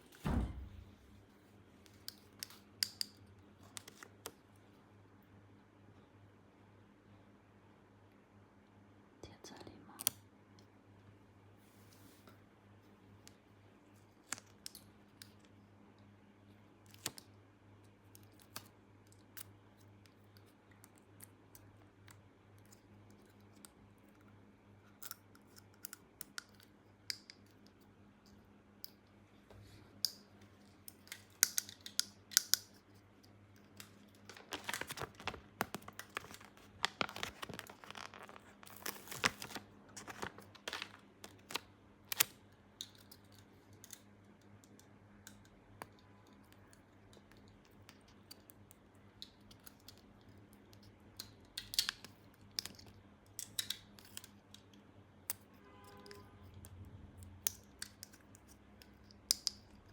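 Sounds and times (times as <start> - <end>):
rustling and scraping of toys: 11.6 - 12.4.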